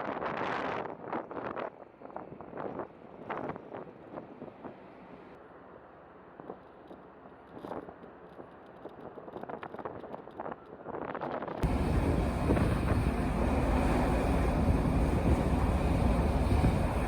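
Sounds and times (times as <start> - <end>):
ship and harbour noise: 11.6 - 17.0
wind buffeting microphone: 11.6 - 17.0.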